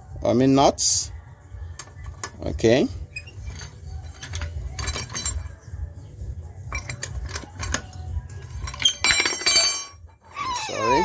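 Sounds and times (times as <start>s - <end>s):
metal tools clinking: 1.8s - 5.7s, 6.6s - 11.0s.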